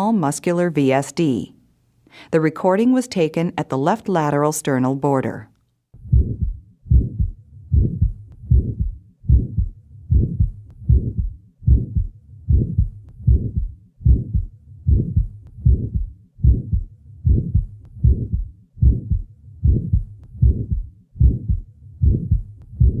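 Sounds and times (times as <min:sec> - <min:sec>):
heart murmur: 0:06.0 - 0:23.0
heartbeat through stethoscope: 0:06.0 - 0:23.0.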